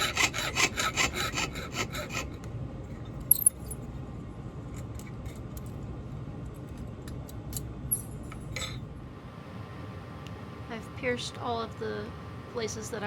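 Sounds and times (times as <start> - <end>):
metal tools clinking on workbench: 3.2 - 3.8.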